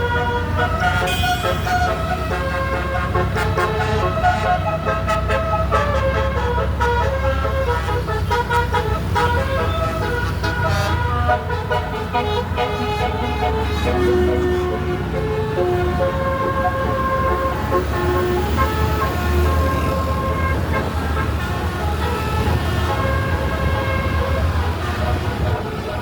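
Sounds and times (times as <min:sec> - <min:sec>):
bus engine rumble: 0:00.0 - 0:26.0
bus horn playing melody: 0:00.0 - 0:26.0.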